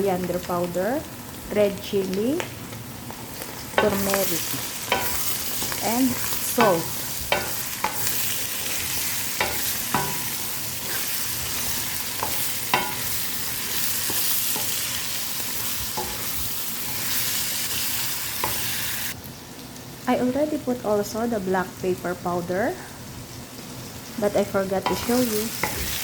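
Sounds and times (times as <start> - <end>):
food sizzling in a pan: 0.0 - 26.0
spoon knocking against pan: 9.4 - 10.3, 12.2 - 13.0.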